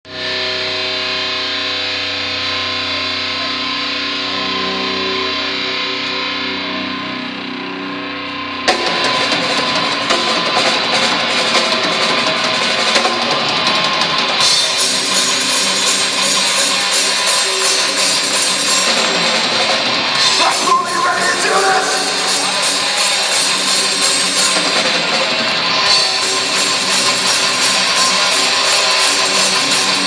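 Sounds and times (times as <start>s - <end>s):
distorted electric guitar: 0.1s - 30.0s
drums and cymbals: 8.7s - 30.0s.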